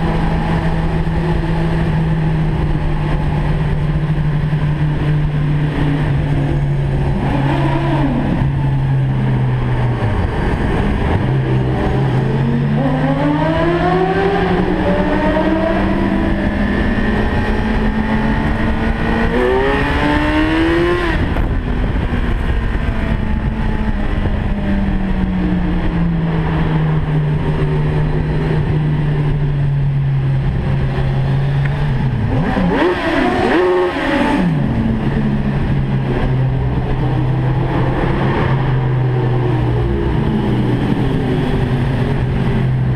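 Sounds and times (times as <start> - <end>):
car engine revving in tunnel: 0.0 - 42.9.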